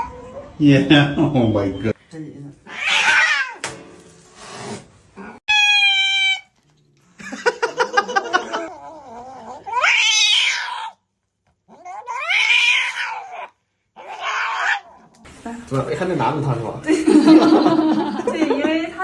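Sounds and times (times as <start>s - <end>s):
cat yowling: 2.7s - 3.6s, 5.2s - 6.5s, 8.6s - 11.0s, 11.7s - 15.1s.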